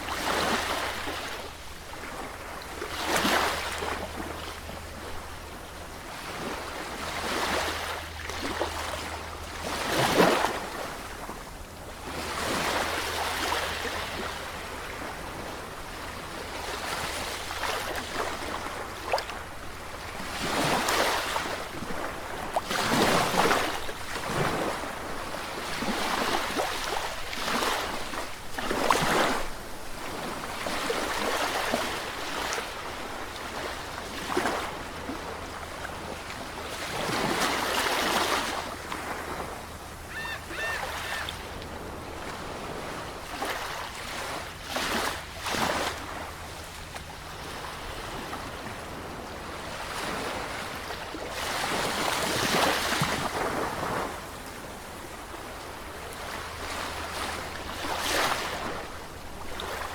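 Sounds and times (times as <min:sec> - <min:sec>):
sea waves breaking: 0:12.0 - 0:59.9.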